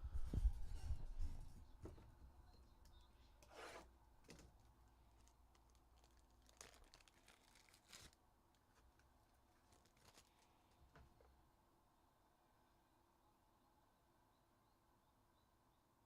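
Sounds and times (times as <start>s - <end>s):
packaging crinkling and tearing: 4.2s - 11.0s.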